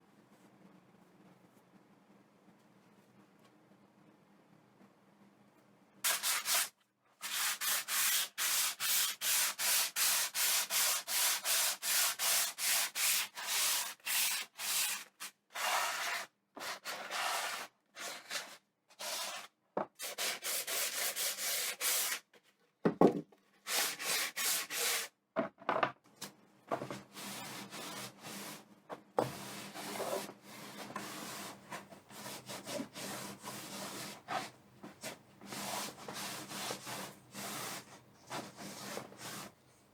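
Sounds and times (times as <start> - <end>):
sandpaper rubbing on wood: 6.1 - 18.4, 19.0 - 22.2, 23.7 - 25.1, 29.3 - 39.5.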